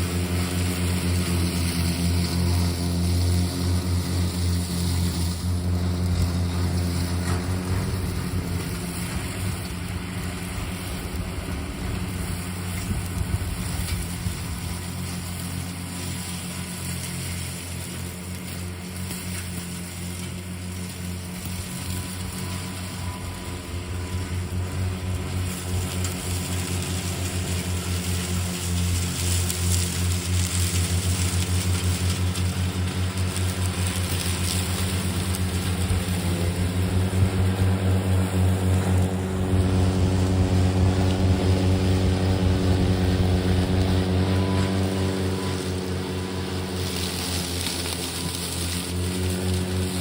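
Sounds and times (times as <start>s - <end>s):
lawn mower motor and blade hum: 0.0s - 50.0s.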